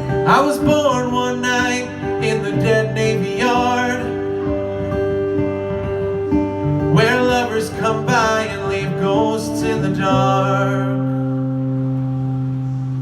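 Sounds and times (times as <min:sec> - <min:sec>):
strummed acoustic guitar: 0:00.0 - 0:13.0
person singing: 0:00.2 - 0:05.0, 0:06.9 - 0:11.6.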